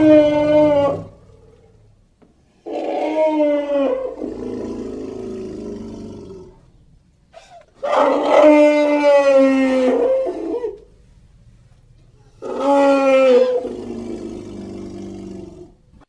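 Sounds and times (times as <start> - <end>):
elephant-like trumpeting calls: 0.0 - 1.4, 12.4 - 15.5.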